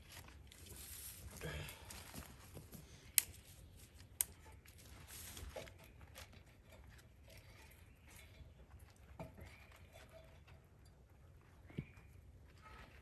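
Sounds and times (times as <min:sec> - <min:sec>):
faint rustling and handling: 0:00.0 - 0:07.8.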